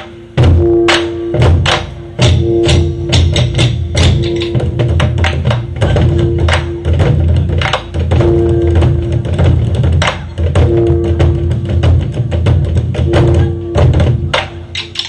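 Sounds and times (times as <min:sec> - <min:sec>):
steady held note: 0:00.0 - 0:05.0
drum ensemble playing fast rhythm: 0:00.0 - 0:15.0
stick clicks: 0:14.7 - 0:15.0.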